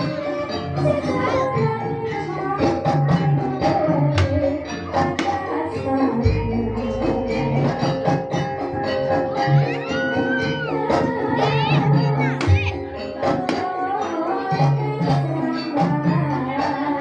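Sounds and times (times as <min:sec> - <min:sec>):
sharp percussion strokes: 0:04.2 - 0:05.7, 0:12.4 - 0:13.9.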